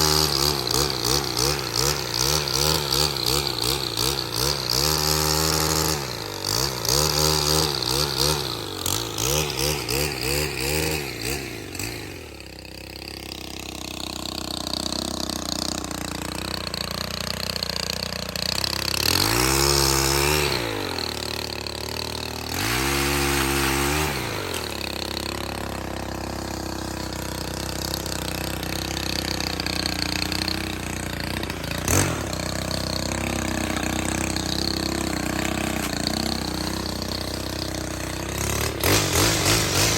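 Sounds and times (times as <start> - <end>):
small engine revving and idling: 0.0 - 39.9.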